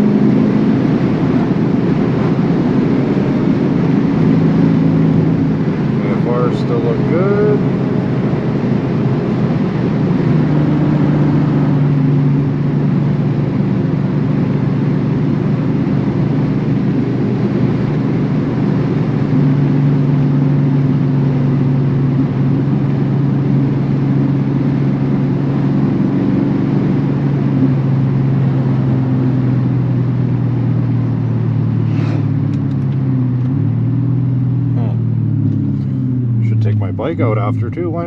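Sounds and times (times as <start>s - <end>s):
car engine droning: 0.0s - 38.0s.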